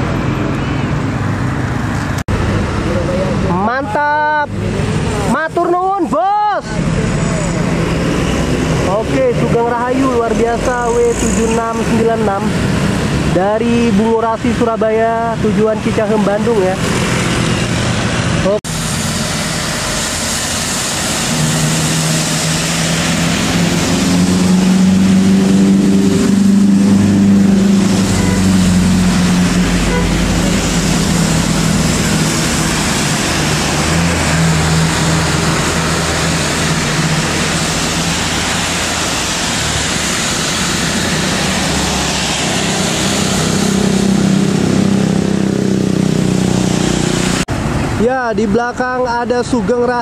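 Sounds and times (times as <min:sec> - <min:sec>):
diesel engine drone: 0:00.0 - 0:50.0.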